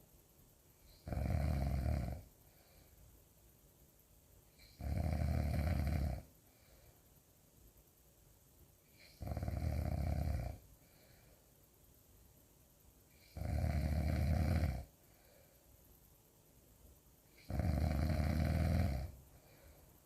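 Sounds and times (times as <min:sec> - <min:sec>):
quiet breathing: 0:00.0 - 0:20.0
person snoring: 0:00.9 - 0:02.3, 0:04.6 - 0:06.3, 0:09.0 - 0:10.6, 0:13.2 - 0:14.9, 0:17.4 - 0:19.7.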